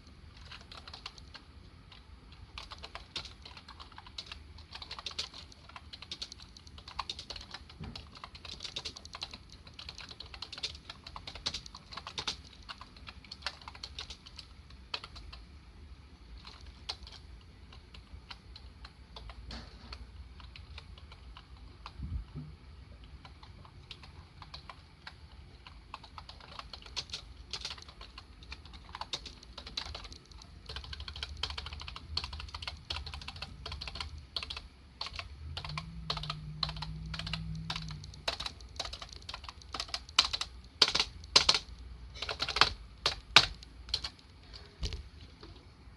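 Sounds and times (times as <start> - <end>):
computer keyboard typing: 0.0 - 15.4, 16.4 - 22.4, 23.0 - 44.2.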